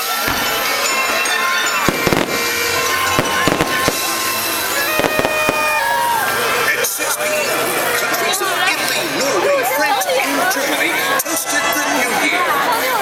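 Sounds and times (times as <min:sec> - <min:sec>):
fireworks bangs: 0:00.0 - 0:07.3
loud show music: 0:00.2 - 0:06.8.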